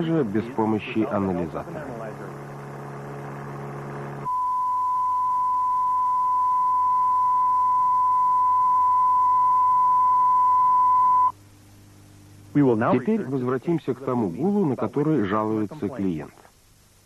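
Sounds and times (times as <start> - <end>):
pure sine test tone: 0.0 - 16.2
low steady hum: 0.0 - 17.0.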